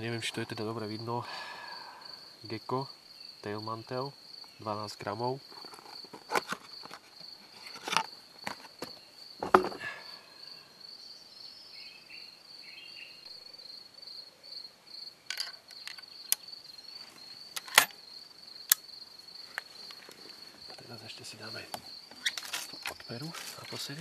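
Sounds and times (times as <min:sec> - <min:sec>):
insects trilling: 0:00.0 - 0:24.0
metallic clicks of gun loading: 0:15.3 - 0:16.4, 0:17.6 - 0:18.0.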